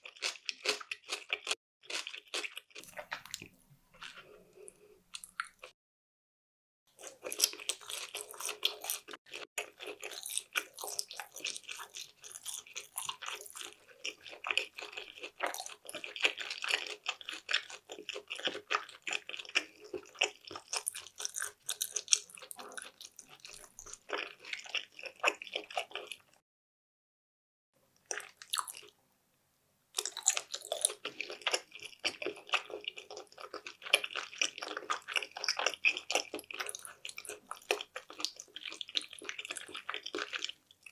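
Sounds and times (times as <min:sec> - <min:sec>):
chewing and biting food: 0:00.0 - 0:05.7, 0:07.0 - 0:26.4, 0:28.1 - 0:29.0, 0:30.0 - 0:40.9.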